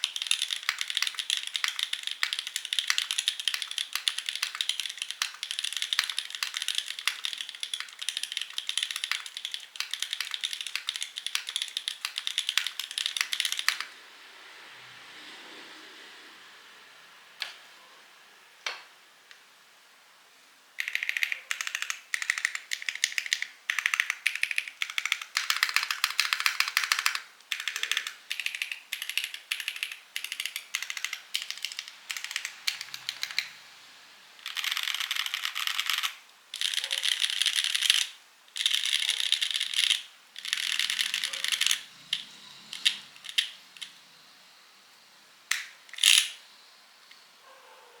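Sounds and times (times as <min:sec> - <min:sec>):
typing on mechanical keyboard: 0:00.0 - 0:13.9, 0:20.8 - 0:33.6, 0:34.4 - 0:43.9.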